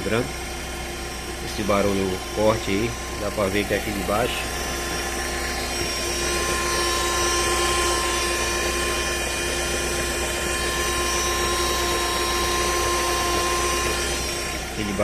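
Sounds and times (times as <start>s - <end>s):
car engine running: 0.0s - 15.0s
shrill engine whine: 0.0s - 15.0s.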